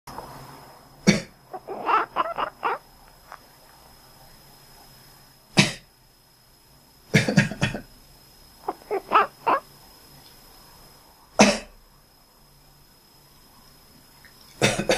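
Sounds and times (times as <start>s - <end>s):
cat chirping: 1.5s - 2.8s, 8.6s - 9.6s
person coughing: 7.2s - 7.8s, 11.4s - 11.7s, 14.6s - 14.9s.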